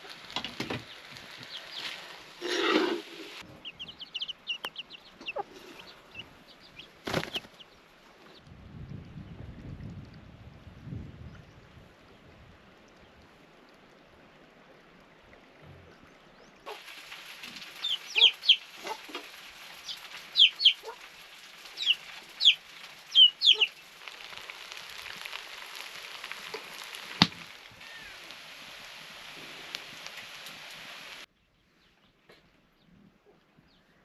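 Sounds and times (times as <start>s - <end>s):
chickens calling: 0.0s - 8.4s, 16.7s - 28.4s.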